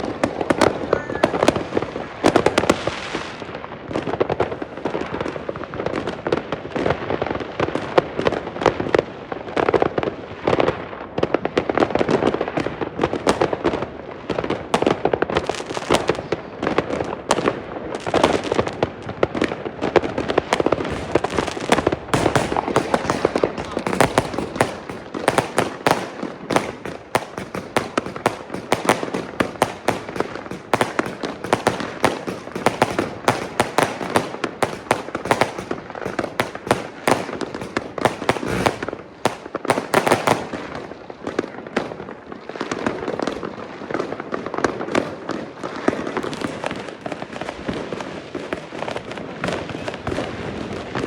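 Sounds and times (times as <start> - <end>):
fireworks bangs and crackles: 0.0 - 51.0.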